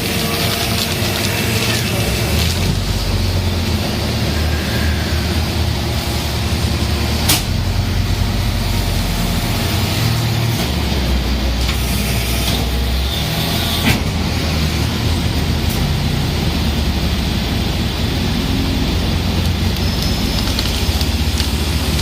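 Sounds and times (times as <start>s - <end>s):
baler machine drone: 0.0s - 11.8s.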